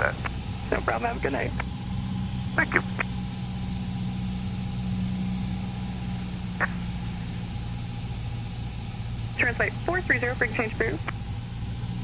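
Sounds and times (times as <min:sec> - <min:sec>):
airplane engine drone in cabin: 0:00.0 - 0:12.0
short blip: 0:06.6 - 0:06.9.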